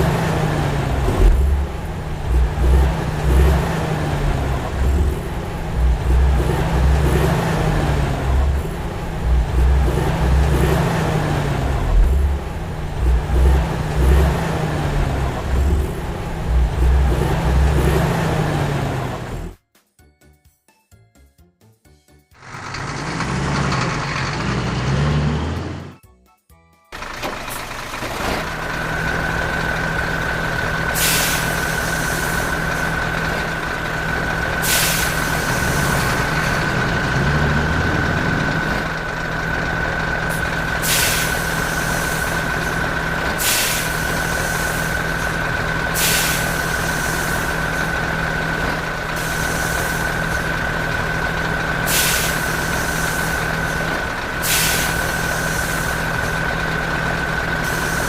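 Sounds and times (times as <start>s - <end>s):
truck engine running: 0.0s - 19.6s, 22.4s - 26.0s, 26.9s - 58.0s
air hisses: 51.9s - 53.4s, 54.4s - 56.0s.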